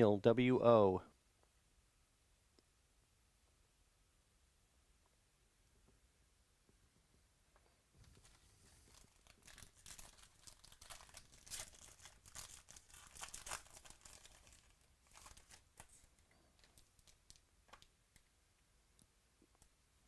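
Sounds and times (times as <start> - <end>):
wrapper tearing and crinkling: 8.2 - 17.9.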